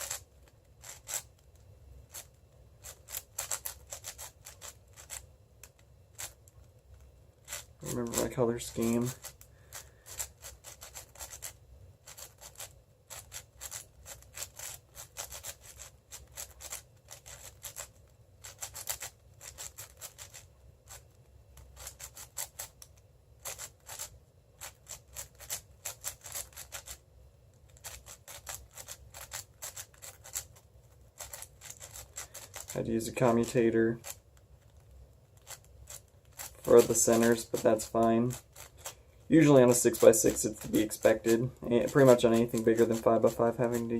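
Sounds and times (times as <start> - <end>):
plastic puzzle cube clicking: 0.0 - 8.2, 9.2 - 27.0, 27.7 - 30.6, 31.2 - 32.7.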